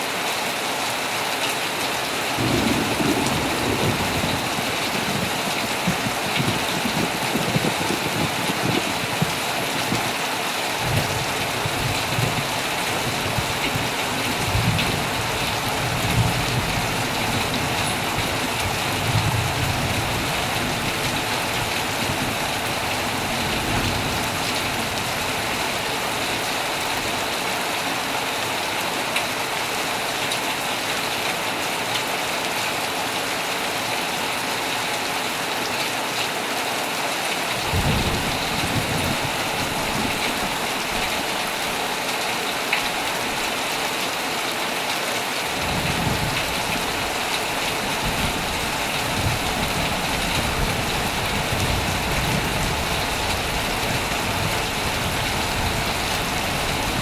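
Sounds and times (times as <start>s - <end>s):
heavy rain on a tent: 0.0s - 57.0s
thunder rumbling: 2.3s - 10.2s, 10.8s - 27.4s, 37.6s - 42.0s, 45.6s - 57.0s.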